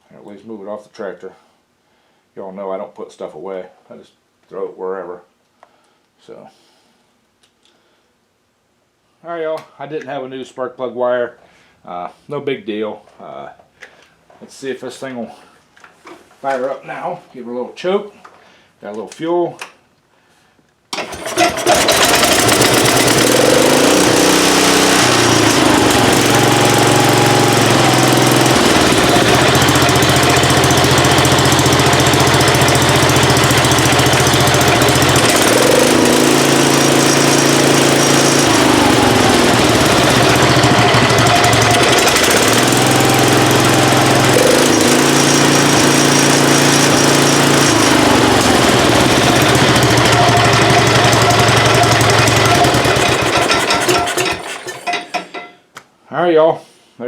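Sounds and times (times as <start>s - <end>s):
small engine running: 21.0s - 55.4s.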